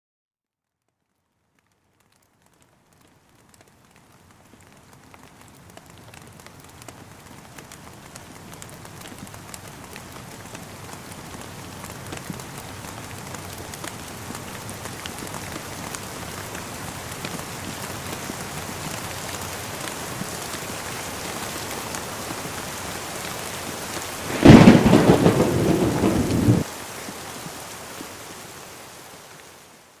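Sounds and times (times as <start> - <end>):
steady rain falling: 0.7 - 30.0
loud thunder clap: 24.2 - 26.7.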